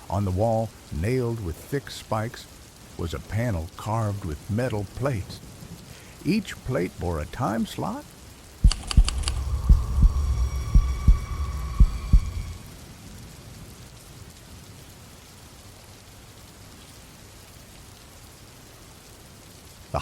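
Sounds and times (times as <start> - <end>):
rain: 0.0 - 20.0
heartbeat thumps: 8.6 - 12.6
low hum: 8.6 - 12.8
high ringing tone: 9.3 - 12.6.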